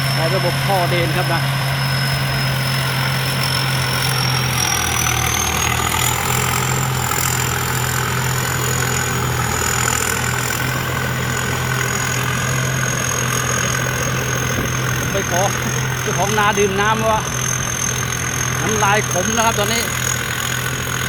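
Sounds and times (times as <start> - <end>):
combine harvester engine running: 0.0 - 21.0
high whine: 0.0 - 21.0.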